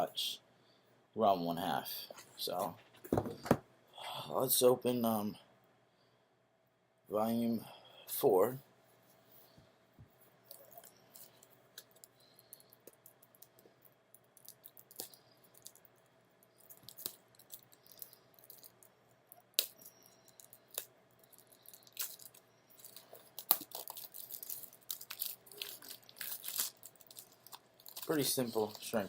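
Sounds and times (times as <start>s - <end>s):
plastic wrap crinkling: 16.6s - 29.0s.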